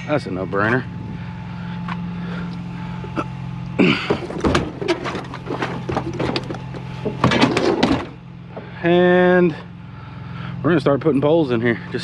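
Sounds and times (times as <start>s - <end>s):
low engine hum: 0.0s - 12.0s
scrap metal clanking: 3.8s - 8.8s.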